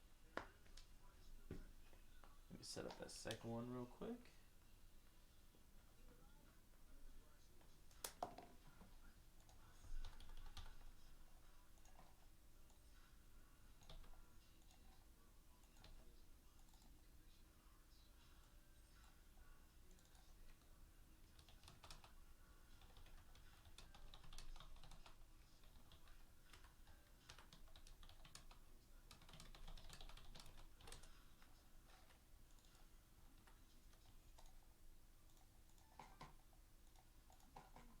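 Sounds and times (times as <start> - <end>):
typing on computer keyboard: 9.4 - 10.9, 13.8 - 15.0, 21.3 - 32.8.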